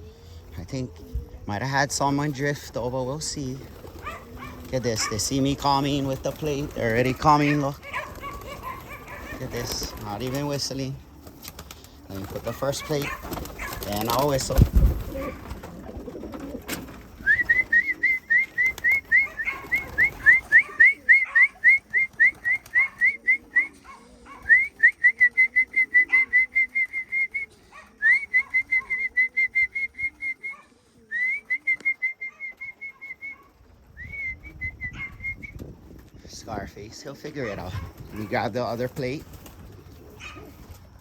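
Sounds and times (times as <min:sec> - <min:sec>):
pigeons cooing: 0:00.0 - 0:41.0
person whistling short notes: 0:17.2 - 0:23.8, 0:24.5 - 0:30.6, 0:31.2 - 0:33.4.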